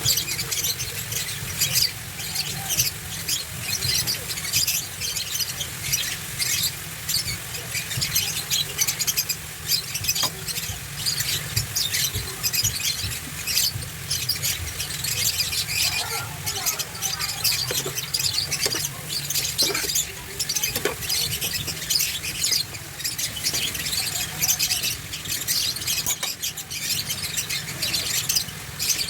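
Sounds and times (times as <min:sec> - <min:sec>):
food sizzling in hot oil: 0:00.0 - 0:29.0.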